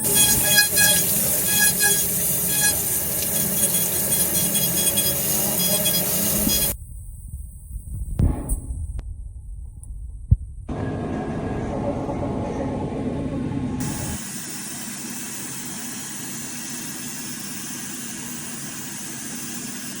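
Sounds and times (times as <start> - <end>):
milling machine running: 0.0 - 6.8.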